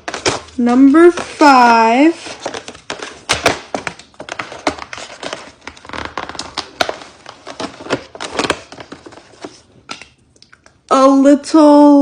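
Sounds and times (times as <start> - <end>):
packaging crinkling and tearing: 0.0 - 10.8.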